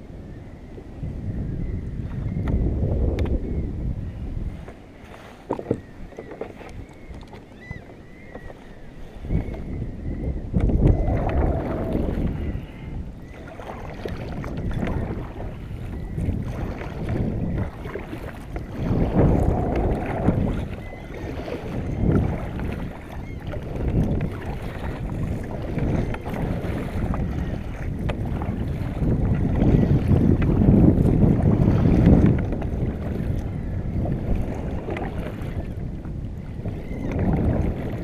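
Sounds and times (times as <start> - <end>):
wind buffeting microphone: 0.0 - 38.0
sea water surging: 10.6 - 38.0.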